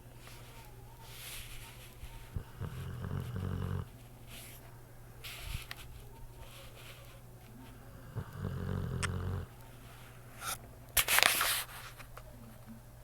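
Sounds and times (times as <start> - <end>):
dog snoring: 2.3 - 3.9, 7.9 - 9.5.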